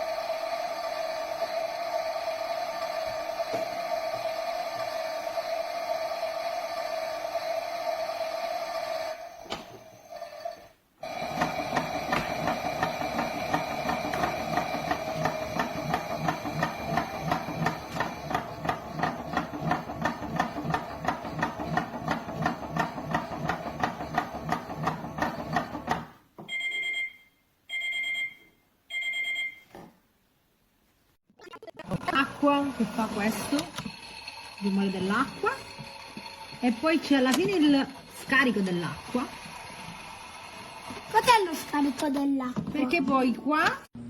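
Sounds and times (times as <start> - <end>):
toy washing machine whirring: 0.0 - 26.1, 31.4 - 43.7
electronic beeps: 31.3 - 32.3.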